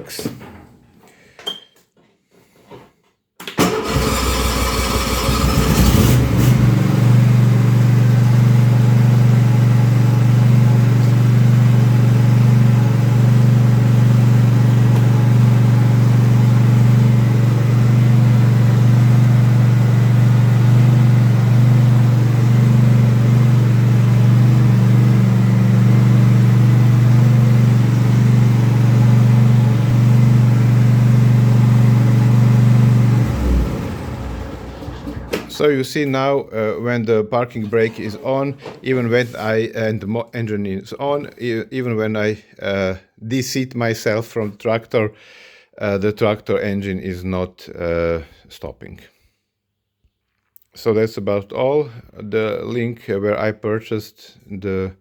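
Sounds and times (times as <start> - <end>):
electric starter cranking engine: 3.6 - 35.6
mower engine running: 3.6 - 35.6.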